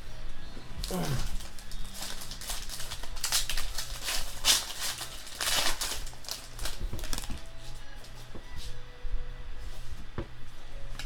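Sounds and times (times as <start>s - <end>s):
cards and plastic sleeves rustling: 0.8s - 8.8s.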